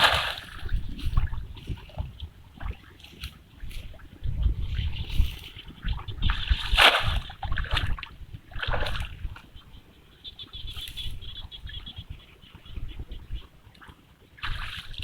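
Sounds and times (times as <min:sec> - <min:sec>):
water splashing and sloshing: 0:00.0 - 0:10.0, 0:12.5 - 0:15.0.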